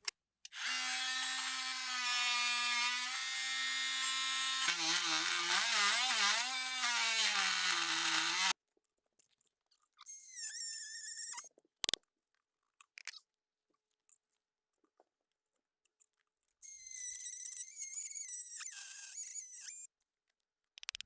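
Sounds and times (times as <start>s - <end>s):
power tool whining: 0.6s - 8.6s.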